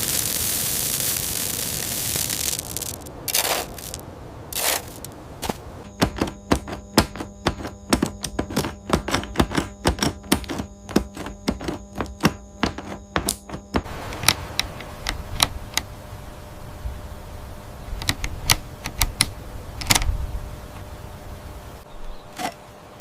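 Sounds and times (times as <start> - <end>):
steady hum: 0.0 - 23.0
rapid tapping clicks: 5.9 - 15.9.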